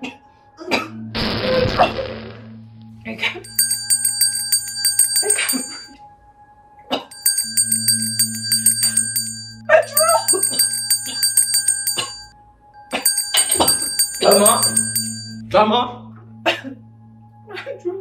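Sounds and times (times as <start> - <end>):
jingling bell-like music loop: 3.5 - 5.9, 7.1 - 12.3, 12.9 - 15.4.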